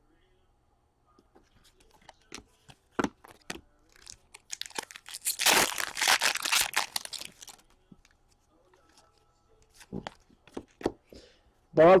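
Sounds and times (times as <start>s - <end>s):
foil wrapper tearing and crinkling: 3.9s - 7.6s.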